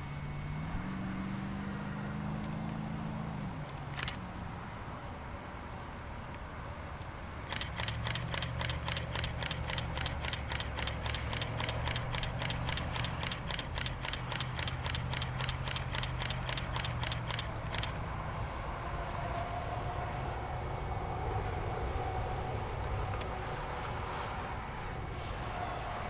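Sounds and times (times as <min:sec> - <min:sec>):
camera shutter clicking in bursts: 0:03.8 - 0:04.3, 0:07.4 - 0:18.1
low vehicle hum: 0:07.0 - 0:24.0.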